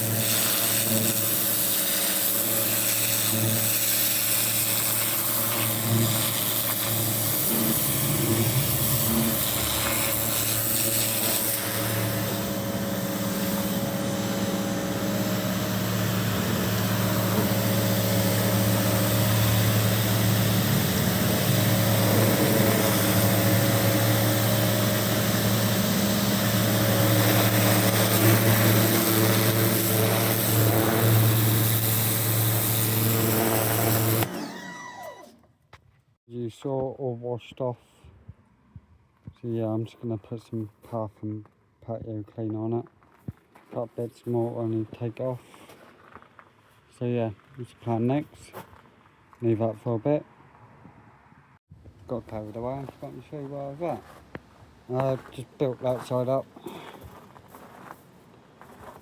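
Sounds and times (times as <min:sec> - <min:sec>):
pressure washer spraying: 0:00.0 - 0:34.8.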